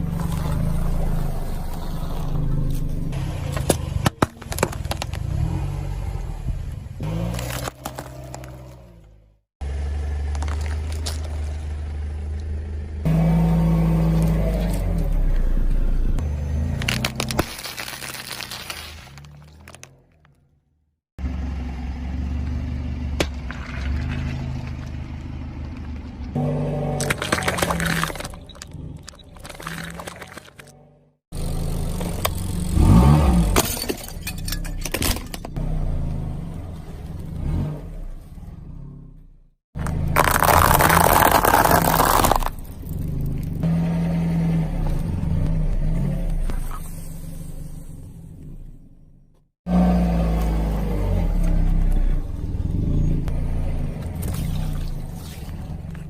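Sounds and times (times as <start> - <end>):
objects cracking under tyre: 0.0 - 5.6, 7.0 - 9.2, 10.1 - 11.8, 16.6 - 20.6, 23.2 - 30.8, 39.8 - 43.6
engine revving: 11.9 - 17.3, 31.0 - 33.6, 35.6 - 48.8, 49.6 - 56.0
tyre crunching object: 16.6 - 20.4, 26.5 - 30.8, 39.8 - 43.6.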